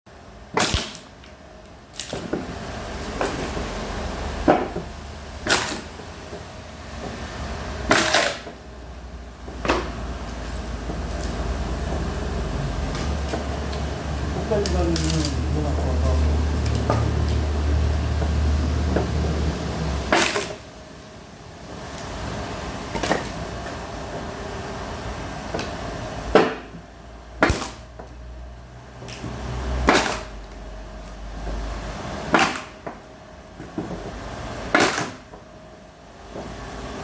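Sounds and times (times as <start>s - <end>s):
axe splitter cracking firewood: 0.5s - 2.5s, 5.4s - 6.0s, 7.9s - 8.6s, 14.6s - 15.4s, 20.1s - 20.6s, 27.4s - 28.0s, 29.1s - 30.6s, 32.3s - 32.9s, 34.7s - 35.3s
low motor hum: 2.4s - 22.9s.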